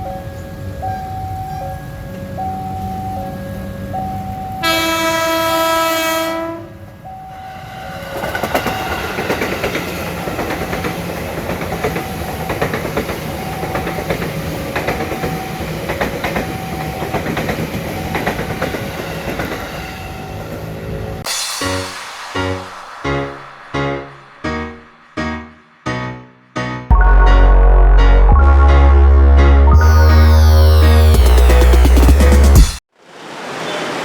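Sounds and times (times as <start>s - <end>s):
level-crossing warning bell: 0.0s - 5.8s, 6.8s - 9.4s, 11.8s - 20.4s
train rumbling past: 0.0s - 26.9s
train horn: 4.6s - 6.9s.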